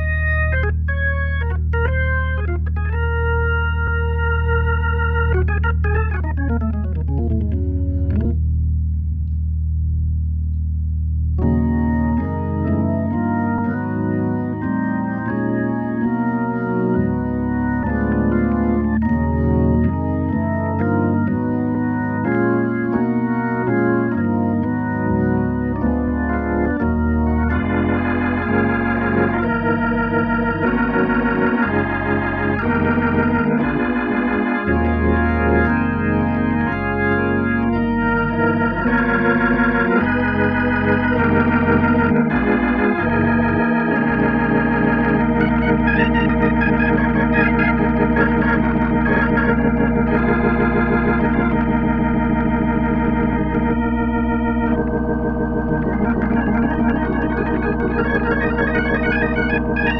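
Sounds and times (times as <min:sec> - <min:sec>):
organ chords through rotating speaker: 0:00.0 - 0:59.9.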